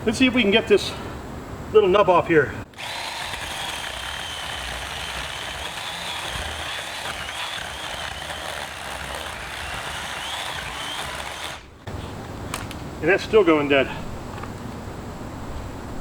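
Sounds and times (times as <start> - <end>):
electric chainsaw cutting branch: 2.7 - 11.9.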